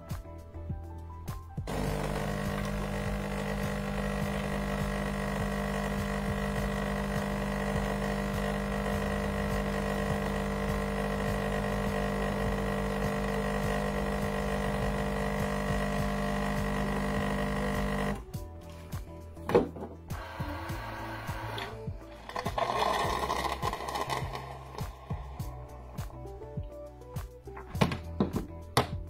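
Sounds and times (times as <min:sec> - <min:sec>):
coffee machine motor hum: 0:01.7 - 0:18.3, 0:20.1 - 0:26.1.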